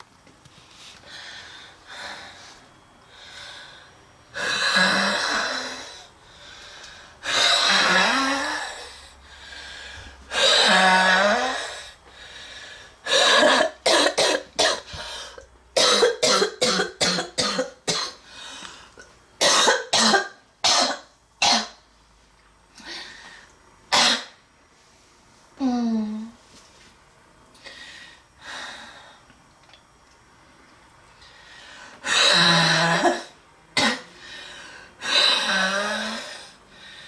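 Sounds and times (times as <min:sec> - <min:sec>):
girl coughing harshly: 0:13.1 - 0:14.9, 0:15.8 - 0:18.2, 0:19.4 - 0:21.8, 0:23.9 - 0:24.4, 0:32.1 - 0:34.1.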